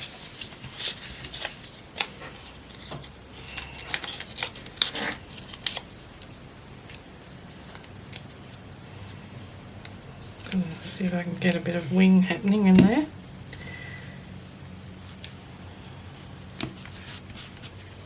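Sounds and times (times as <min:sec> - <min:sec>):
paper rustling: 0:00.0 - 0:06.3, 0:16.6 - 0:18.0.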